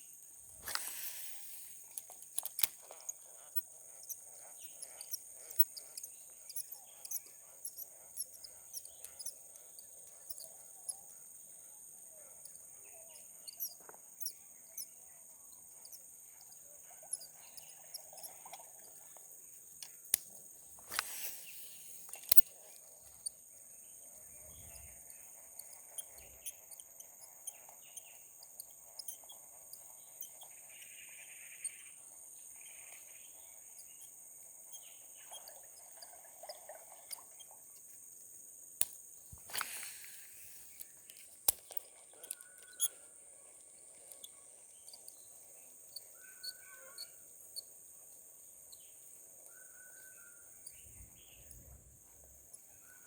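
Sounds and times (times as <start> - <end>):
small chirps: 0.5 - 53.0
sharp clicks: 0.6 - 10.5, 19.8 - 23.3, 38.8 - 43.0.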